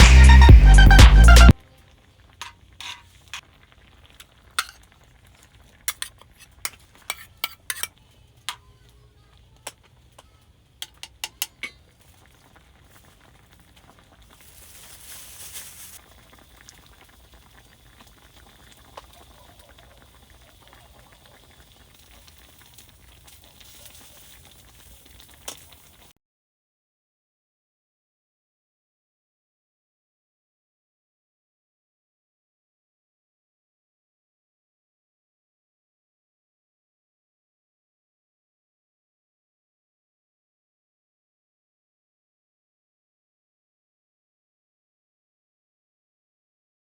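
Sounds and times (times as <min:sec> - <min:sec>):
faint background noise: 0:01.5 - 0:26.1
utensils clinking against pots: 0:02.4 - 0:03.4, 0:04.2 - 0:08.8, 0:09.6 - 0:12.4
short hiss: 0:14.2 - 0:16.1.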